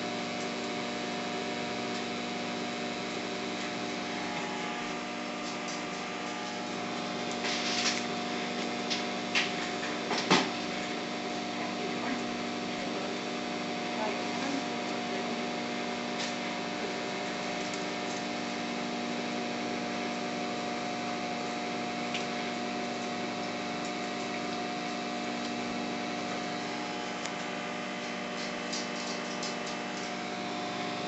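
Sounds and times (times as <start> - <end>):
steady machine hum: 0.0 - 31.0.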